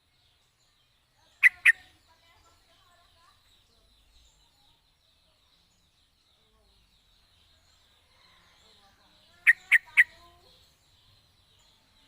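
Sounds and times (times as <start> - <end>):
bird calling sharp notes: 1.4 - 2.0, 9.4 - 10.2.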